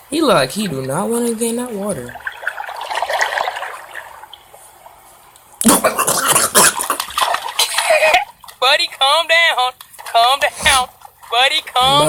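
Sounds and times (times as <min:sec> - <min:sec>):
soft water rush: 0:00.0 - 0:05.5
water splashing: 0:00.2 - 0:08.8.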